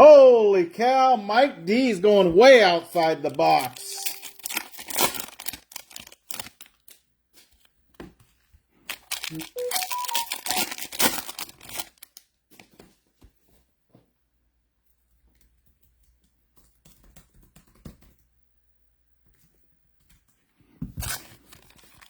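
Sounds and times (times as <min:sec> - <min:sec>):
plastic packaging tearing and crinkling: 0:03.5 - 0:07.0, 0:08.9 - 0:12.7, 0:21.0 - 0:22.0.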